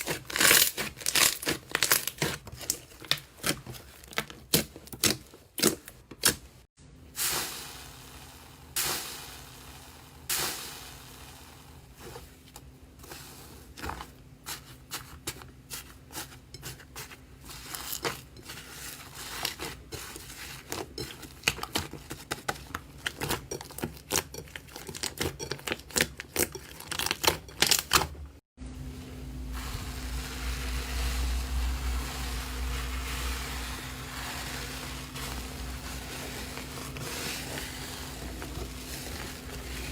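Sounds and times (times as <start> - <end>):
slime crackling and popping: 0.0 - 2.8
low rumble with faint hum: 28.6 - 39.9.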